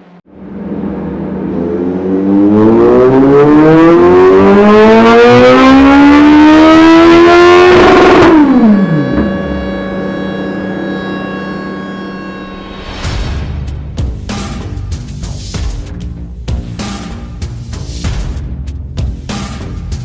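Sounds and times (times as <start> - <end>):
motorcycle engine revving: 1.6 - 13.2.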